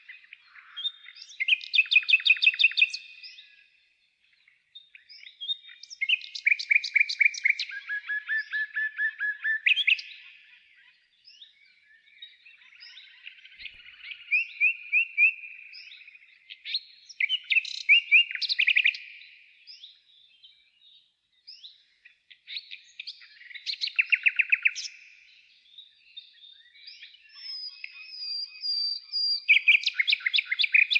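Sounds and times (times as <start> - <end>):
songbirds singing trills: 0.0 - 30.9.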